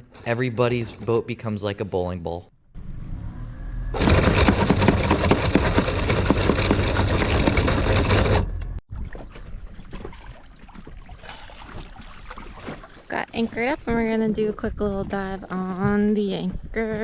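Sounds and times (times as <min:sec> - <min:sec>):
anchor chain rattling out: 0:04.0 - 0:08.5
water noise: 0:04.0 - 0:16.7
wind noise: 0:08.9 - 0:17.0.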